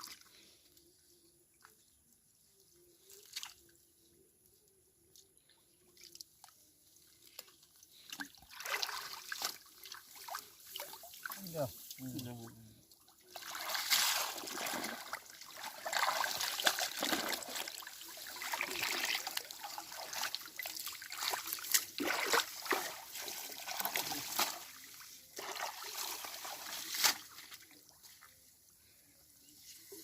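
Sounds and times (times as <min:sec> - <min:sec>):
water splashing and trickling: 0:00.0 - 0:00.6, 0:05.4 - 0:28.8.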